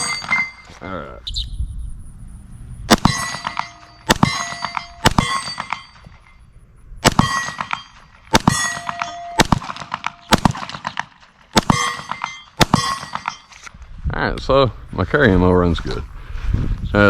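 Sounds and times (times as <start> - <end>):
ringing metallic clang: 0.0 - 1.1, 2.8 - 11.0, 11.6 - 13.7
pistol shots: 2.9 - 6.0, 7.0 - 13.5.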